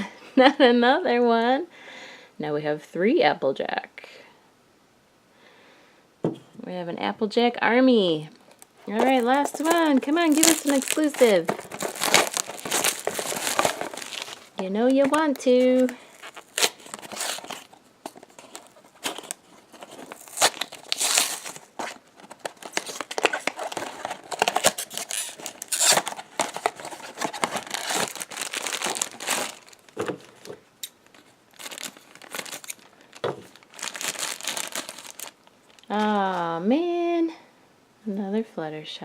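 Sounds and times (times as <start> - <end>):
packaging being torn and crinkled: 8.4 - 36.0.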